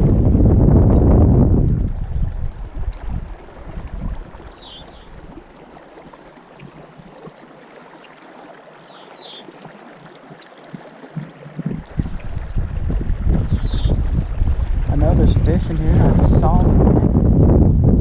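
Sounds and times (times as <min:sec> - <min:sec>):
wind buffeting microphone: 0:00.0 - 0:05.4, 0:11.2 - 0:18.0
river water flowing: 0:01.8 - 0:16.8.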